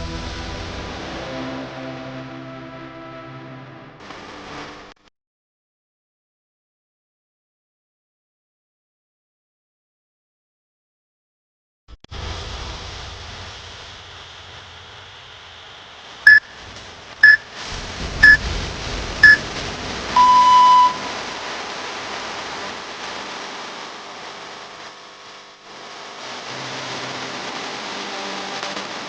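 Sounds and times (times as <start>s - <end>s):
longer lower beep: 16.3s - 16.5s, 17.2s - 17.5s, 18.2s - 18.4s, 19.2s - 19.4s, 20.2s - 21.1s
short high timer beeps: 17.2s - 17.4s, 20.2s - 21.1s
steady hiss: 20.8s - 29.0s.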